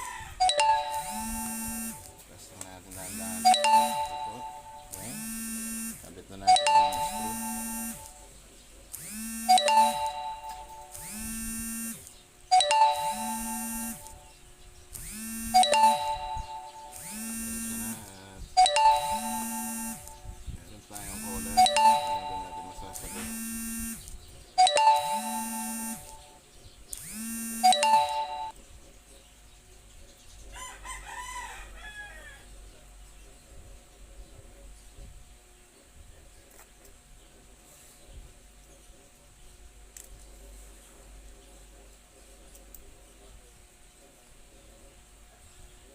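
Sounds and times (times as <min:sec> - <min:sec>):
mobile phone ringtone: 0:00.4 - 0:02.2, 0:03.0 - 0:08.3, 0:09.0 - 0:14.3, 0:15.1 - 0:20.4, 0:21.0 - 0:24.0, 0:24.6 - 0:26.4, 0:27.0 - 0:28.6
faint wavering call tone: 0:21.4 - 0:23.2.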